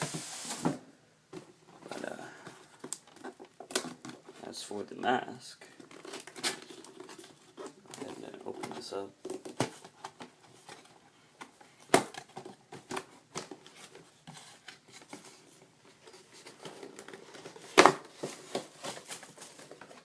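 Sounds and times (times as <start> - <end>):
packaging crinkling and rustling: 5.6 - 11.0, 11.9 - 20.0.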